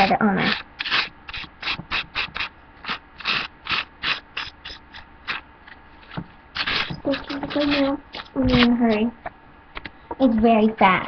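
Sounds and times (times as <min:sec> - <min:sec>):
knife scraping butter on toast: 0:00.0 - 0:05.4, 0:06.0 - 0:09.0.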